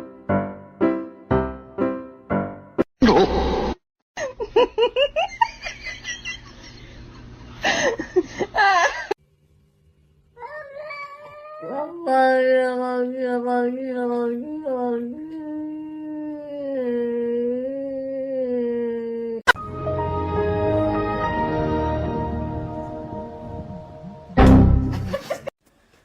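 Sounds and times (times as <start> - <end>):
cat meowing: 10.4 - 11.8
music with held notes: 19.6 - 25.1
people laughing: 24.9 - 25.5.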